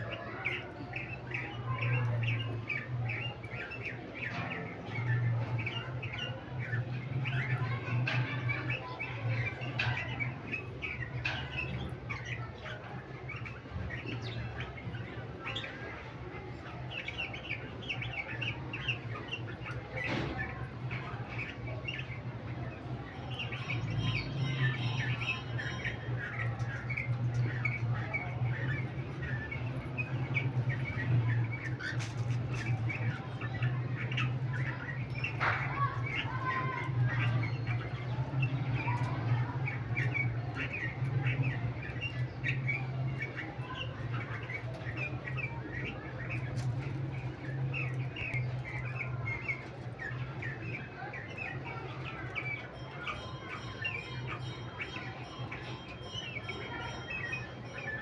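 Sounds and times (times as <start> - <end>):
lovebirds chirping and chattering: 0.0 - 58.0.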